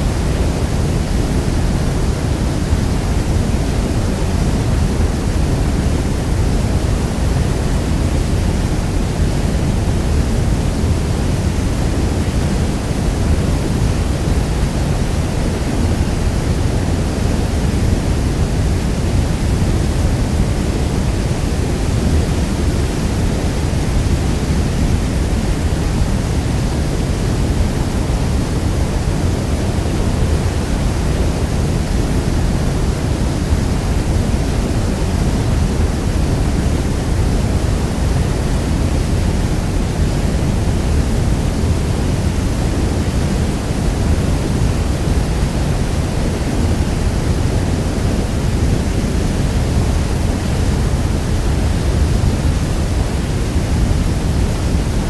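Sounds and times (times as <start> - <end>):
waterfall roaring: 0.0 - 55.0.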